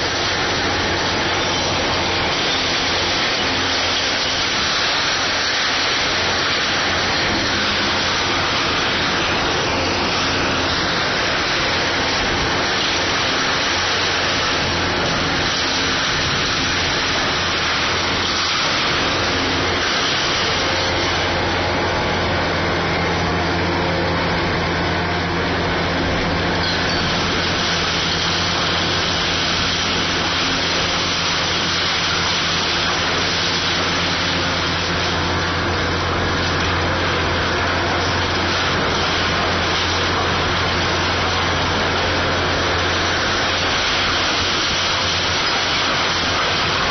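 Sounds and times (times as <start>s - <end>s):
excavator diesel engine running: 0.0s - 46.9s
loud even hiss: 0.0s - 46.9s.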